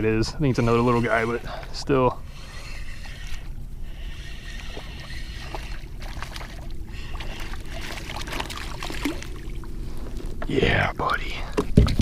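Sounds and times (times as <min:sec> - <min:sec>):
low water rumble: 0:00.0 - 0:12.0
small water splashes: 0:04.6 - 0:09.8.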